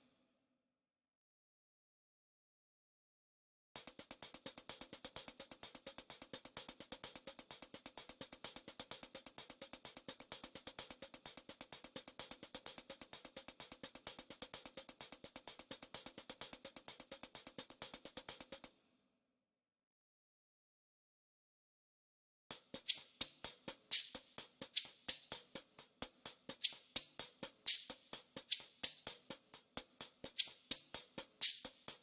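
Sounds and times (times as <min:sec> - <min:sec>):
fast high-pitched drum roll: 0:22.8 - 0:32.0.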